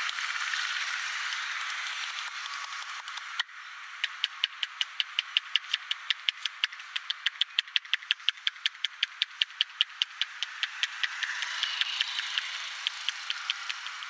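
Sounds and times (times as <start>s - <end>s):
rapid tapping on head: 4.0s - 14.0s.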